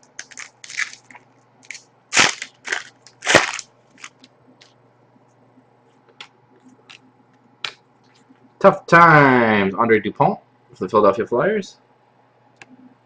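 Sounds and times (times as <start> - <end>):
card wrappers crinkling: 0.0 - 4.3
wrapper crunches: 0.0 - 4.3.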